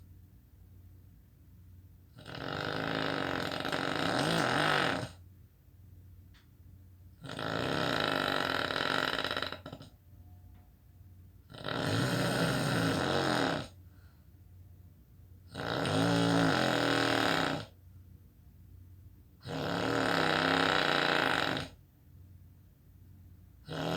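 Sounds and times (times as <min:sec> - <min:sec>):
person snoring: 0:02.2 - 0:05.2, 0:07.2 - 0:09.9, 0:11.5 - 0:13.8, 0:15.6 - 0:17.7, 0:19.5 - 0:21.8, 0:23.7 - 0:23.9.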